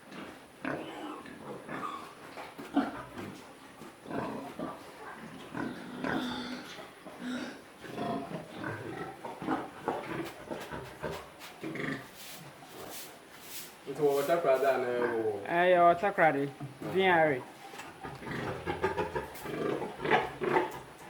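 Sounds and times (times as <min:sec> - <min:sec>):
pigs grunting and squealing: 0:00.0 - 0:12.2, 0:14.8 - 0:15.5, 0:17.9 - 0:21.0.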